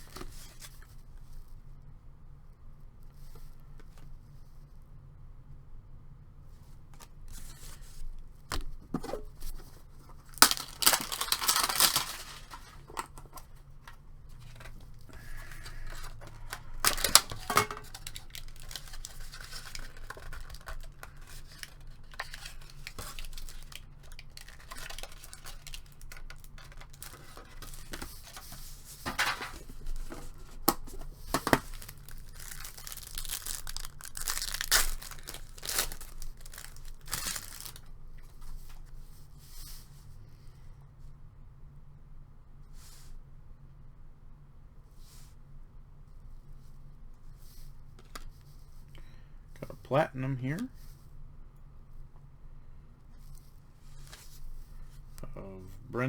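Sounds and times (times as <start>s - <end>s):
wrappers tearing and crinkling: 10.2s - 13.5s, 14.3s - 38.0s.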